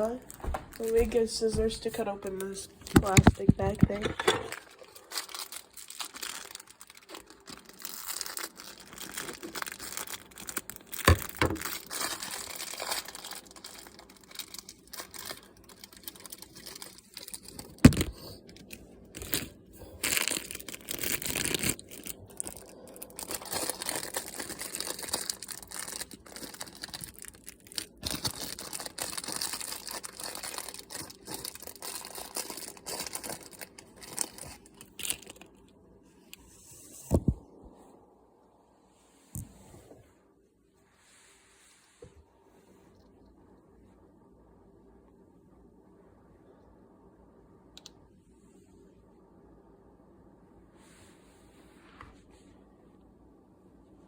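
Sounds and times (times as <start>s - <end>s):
plastic bag crinkling and tearing: 0.0s - 35.6s.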